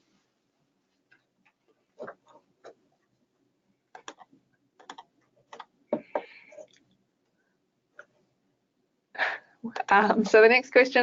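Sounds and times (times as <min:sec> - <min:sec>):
computer keyboard typing: 0:03.9 - 0:05.7.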